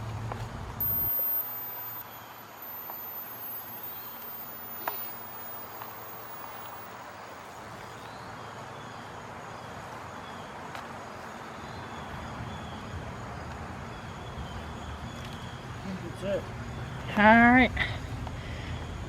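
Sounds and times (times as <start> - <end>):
insects chirping: 0.8 - 9.1.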